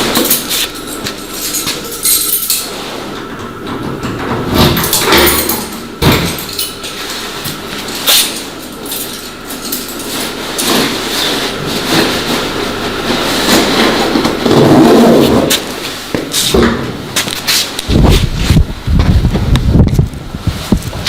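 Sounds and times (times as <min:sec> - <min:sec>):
knocks and rattles of goods: 0:03.2 - 0:06.6.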